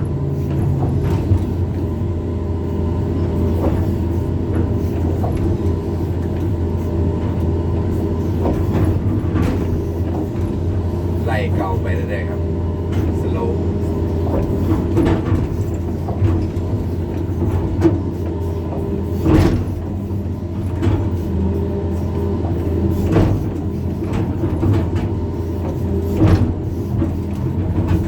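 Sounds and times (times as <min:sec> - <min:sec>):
excavator diesel engine running: 0:00.0 - 0:28.0
excavator bucket clanking: 0:03.2 - 0:11.8, 0:12.4 - 0:20.0.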